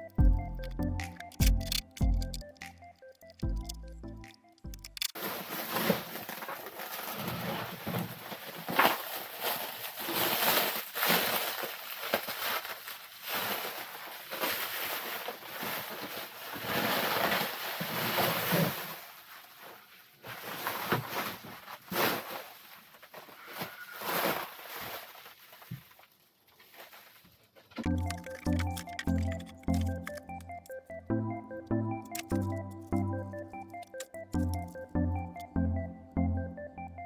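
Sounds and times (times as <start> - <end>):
scraping and rustling of parts: 4.8 - 30.9.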